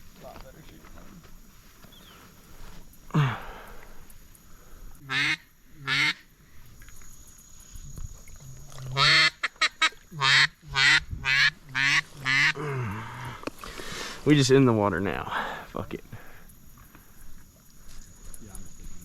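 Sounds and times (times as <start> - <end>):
duck quacking: 5.0 - 6.2, 9.0 - 12.6.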